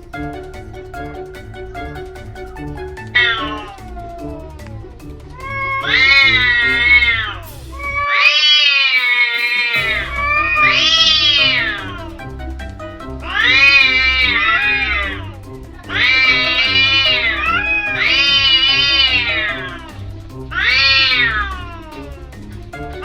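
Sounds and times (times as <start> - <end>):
background music with beat: 0.0 - 8.1, 9.0 - 23.0
cats yowling: 3.1 - 12.2, 13.2 - 22.3.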